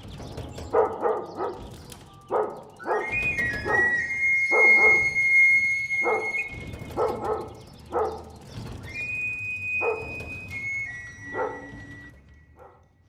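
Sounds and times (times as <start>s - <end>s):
dog barking: 0.7s - 5.1s, 6.0s - 8.4s, 9.8s - 10.2s, 11.3s - 11.8s, 12.6s - 12.8s
shrill whistle: 2.7s - 12.9s.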